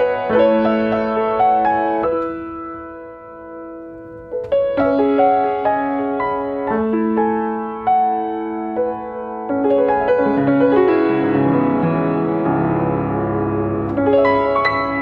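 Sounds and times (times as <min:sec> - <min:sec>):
low piano chords: 0:00.0 - 0:15.0
slow piano melody: 0:00.0 - 0:15.0.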